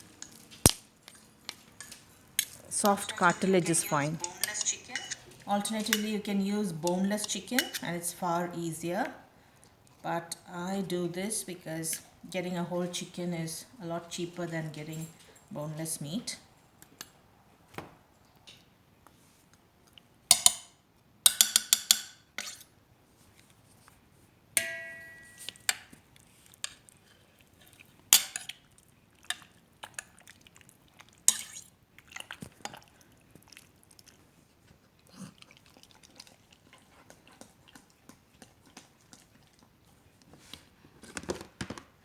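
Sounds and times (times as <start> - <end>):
metal kitchenware clattering: 1.1 - 7.9
ringing metal clang: 24.6 - 25.5.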